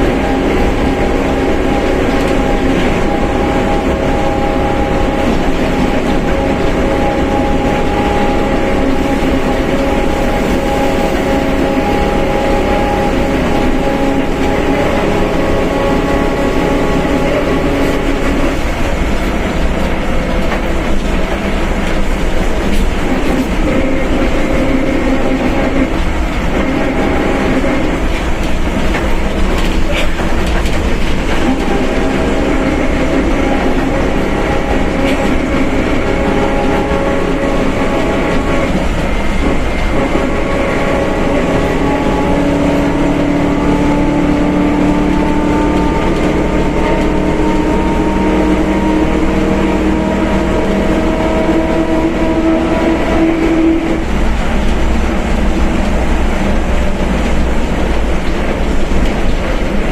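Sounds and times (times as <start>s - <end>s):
bus rumbling: 0.0s - 59.9s.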